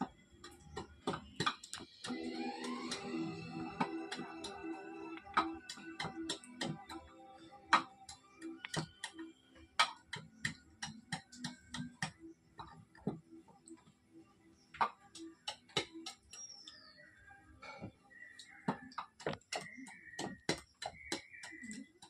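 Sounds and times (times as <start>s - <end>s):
soft background music: 0.0s - 22.0s
carving tools tapping on wood: 0.4s - 1.9s, 3.8s - 4.6s, 5.2s - 7.0s, 7.7s - 9.2s, 9.8s - 13.2s, 14.8s - 16.8s, 18.6s - 22.0s.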